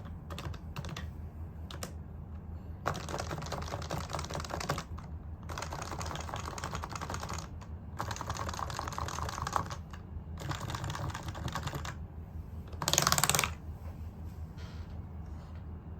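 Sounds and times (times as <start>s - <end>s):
fast keyboard typing: 0.0s - 1.1s, 1.7s - 2.0s, 2.8s - 12.0s, 12.7s - 13.6s.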